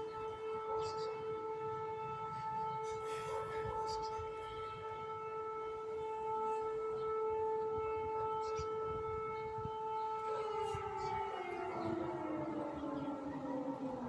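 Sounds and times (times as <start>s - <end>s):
air-raid siren: 0.0s - 14.0s.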